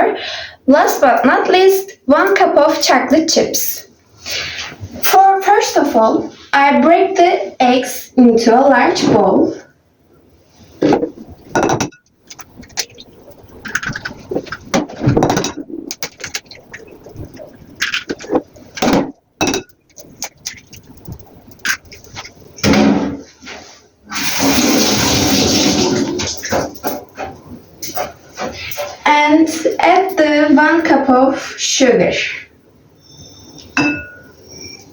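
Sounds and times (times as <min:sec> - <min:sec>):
eggs cracking on a bowl: 0:11.0 - 0:22.4.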